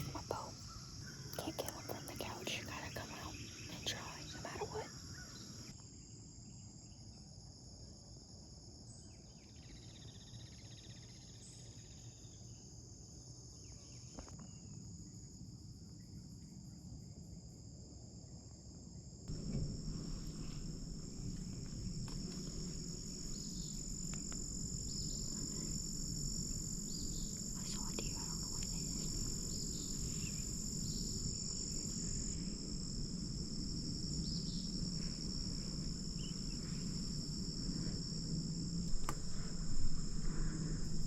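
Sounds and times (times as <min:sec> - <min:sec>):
crickets and insects chirping: 0:00.0 - 0:41.0
low rumble: 0:19.3 - 0:41.0.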